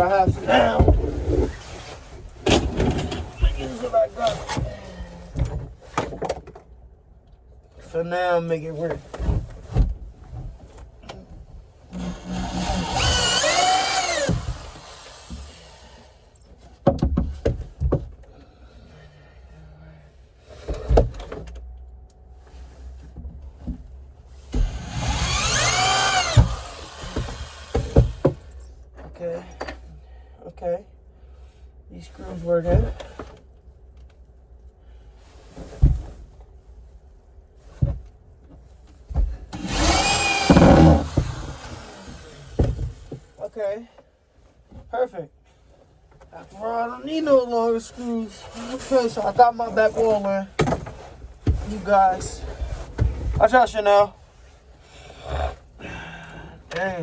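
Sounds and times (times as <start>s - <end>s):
power drill driving screw into wood: 11.9s - 16.2s, 24.5s - 28.6s, 39.5s - 43.2s.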